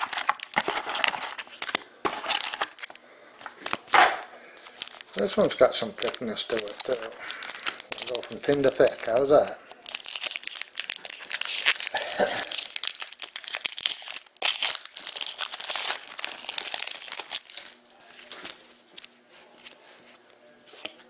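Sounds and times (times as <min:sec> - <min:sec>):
wrapper crinkling and tearing: 0:00.0 - 0:04.0, 0:04.6 - 0:19.1
cards rustling and ticking: 0:04.6 - 0:19.8.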